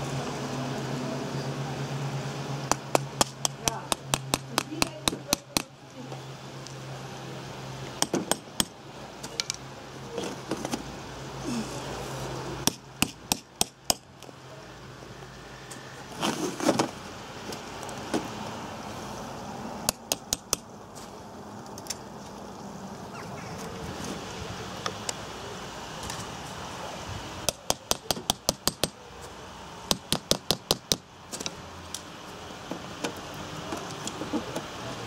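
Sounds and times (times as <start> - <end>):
hammer tapping: 2.7 - 5.7, 12.6 - 14.0, 27.5 - 29.0.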